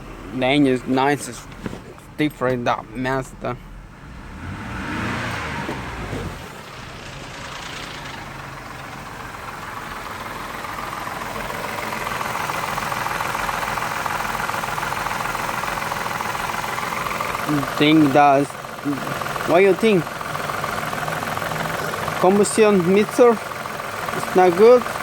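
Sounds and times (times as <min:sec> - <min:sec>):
car engine running: 0:00.0 - 0:25.0
rapid ticking engine knock: 0:06.7 - 0:25.0.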